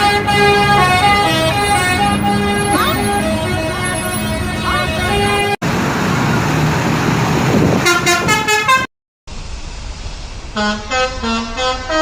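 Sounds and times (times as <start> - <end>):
musical bus horn: 0.0 - 5.6, 7.8 - 8.9, 10.6 - 12.0
bus engine: 0.0 - 12.0
road noise: 0.0 - 12.0.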